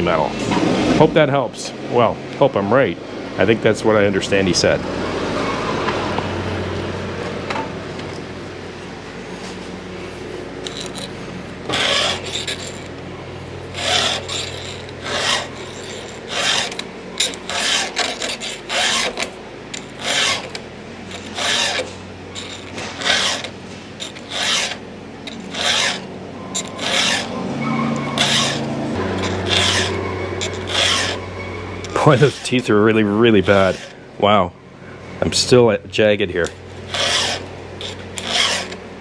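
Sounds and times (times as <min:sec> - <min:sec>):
file rasping on saw chain: 0:10.6 - 0:13.0, 0:13.7 - 0:34.0, 0:36.9 - 0:38.8.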